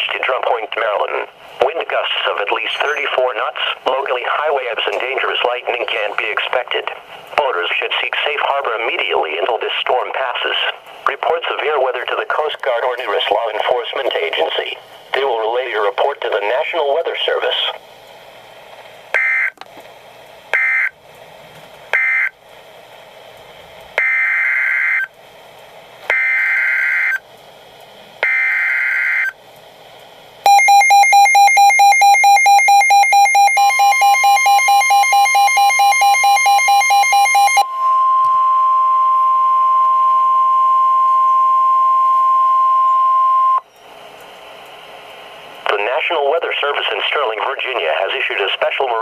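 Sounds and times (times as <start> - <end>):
steady warning alarm tone: 19.1 - 19.6, 20.5 - 21.0, 21.9 - 22.4, 24.0 - 25.1, 26.1 - 27.2, 28.2 - 29.4, 30.4 - 43.7
fast-pulsing alert beeps: 30.5 - 37.6.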